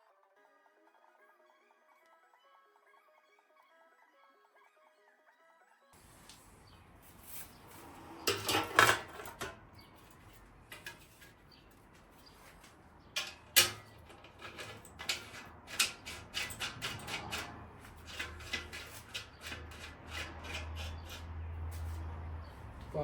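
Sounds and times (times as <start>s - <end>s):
metal tools clinking on workbench: 7.1s - 21.2s.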